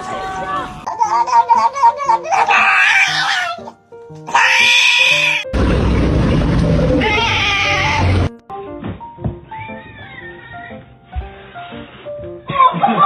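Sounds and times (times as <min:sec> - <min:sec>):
light background music: 0:00.0 - 0:05.5, 0:07.0 - 0:13.0
cat yowling: 0:00.9 - 0:05.5, 0:06.9 - 0:08.3, 0:09.5 - 0:10.8.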